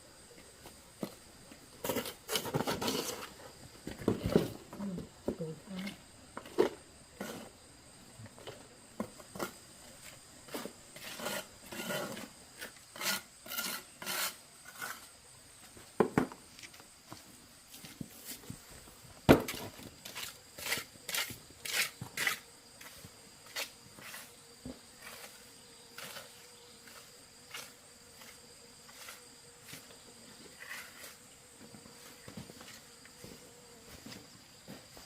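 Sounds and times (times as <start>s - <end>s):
high insect drone: 0.0s - 35.0s.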